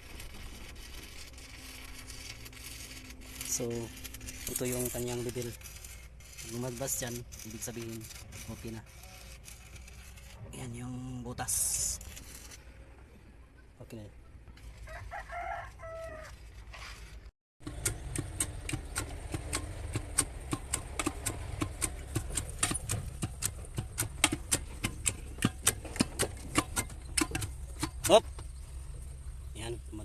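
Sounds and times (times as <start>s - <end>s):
rooster crowing: 14.8s - 16.4s
sharp clicks: 17.6s - 28.2s.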